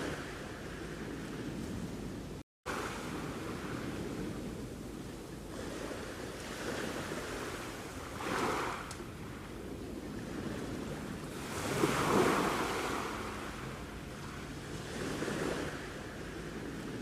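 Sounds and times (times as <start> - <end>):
waves breaking: 0.0 - 17.0
sea waves washing onto shore: 2.7 - 17.0.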